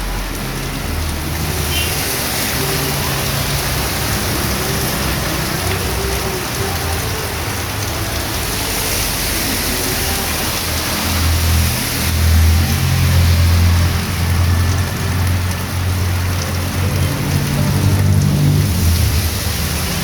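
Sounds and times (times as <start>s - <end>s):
heavy rain pouring on street: 0.0s - 20.0s.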